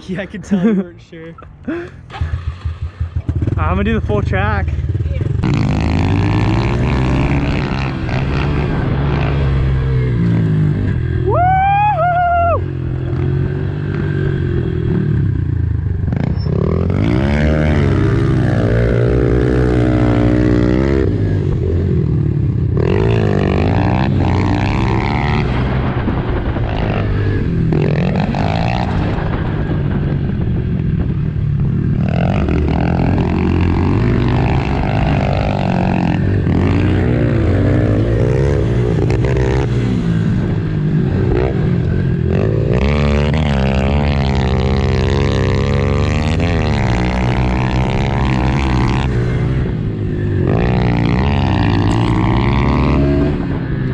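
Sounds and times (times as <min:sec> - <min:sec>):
motorcycle engine revving: 0:01.7 - 0:53.9.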